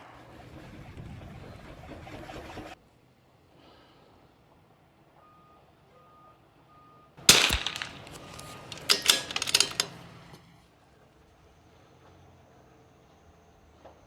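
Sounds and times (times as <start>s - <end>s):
rifle shot: 7.2s - 9.9s
rifle bolt metallic clicks: 7.2s - 10.0s.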